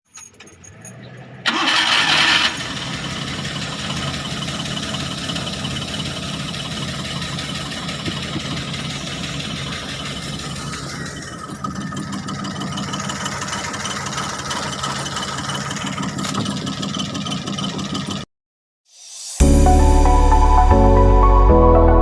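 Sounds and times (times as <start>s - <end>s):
engine cranking: 0.1s - 18.3s
engine idling: 1.4s - 18.3s.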